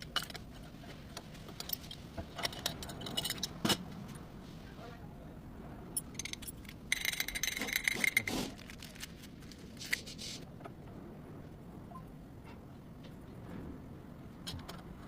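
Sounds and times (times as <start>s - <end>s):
metallic clicks and clinks: 1.6s - 3.8s, 6.0s - 9.0s.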